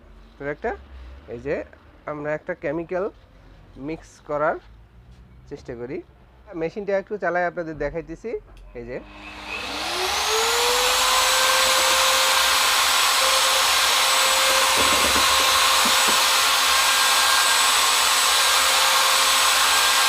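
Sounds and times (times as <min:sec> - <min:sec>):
electric mixer motor whining: 0:09.1 - 0:20.0.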